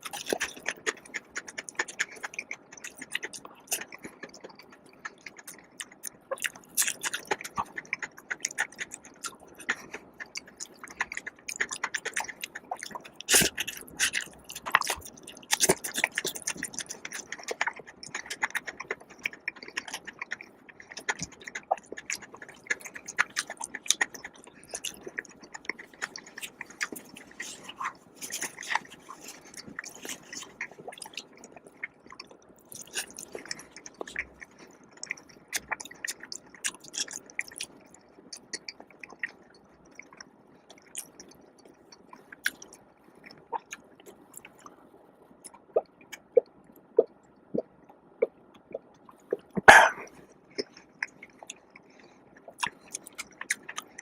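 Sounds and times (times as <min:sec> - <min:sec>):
person chewing food: 0:00.0 - 0:54.0.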